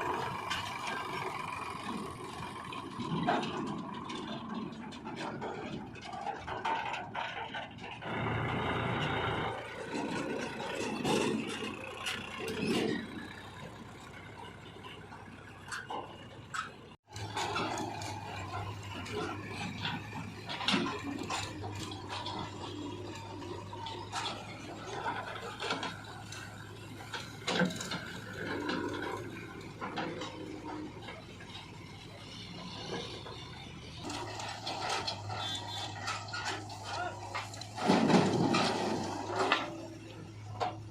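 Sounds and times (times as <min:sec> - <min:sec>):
backhoe diesel engine: 0:00.0 - 0:40.9
knocks and clatter: 0:00.1 - 0:40.9.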